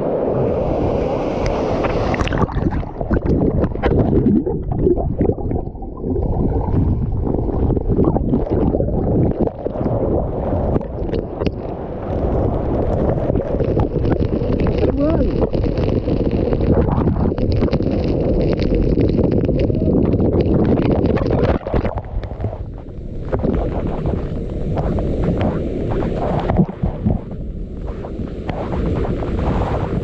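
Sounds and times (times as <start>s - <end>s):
wind buffeting microphone: 0.0s - 30.0s
crackles and knocks: 1.8s - 29.8s.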